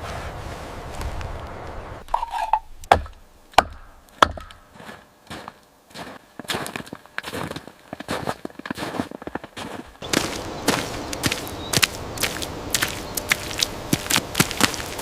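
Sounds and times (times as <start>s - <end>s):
sharp wood-like knocks: 2.8s - 4.6s.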